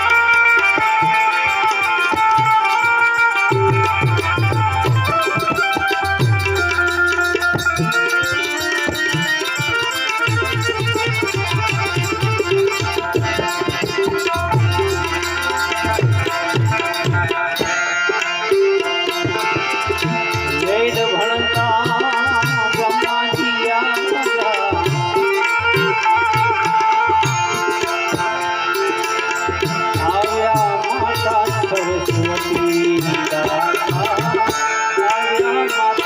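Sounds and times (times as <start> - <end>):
tabla rhythm: 0.0 - 36.0
gliding melody line: 3.5 - 23.1.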